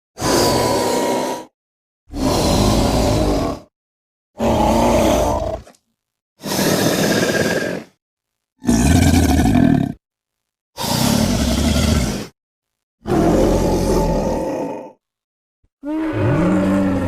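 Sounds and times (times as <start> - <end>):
alligator roars: 0.2 - 1.5, 2.1 - 3.7, 4.4 - 5.7, 6.4 - 7.9, 8.6 - 10.0, 10.8 - 12.3, 13.0 - 15.0, 15.8 - 17.0.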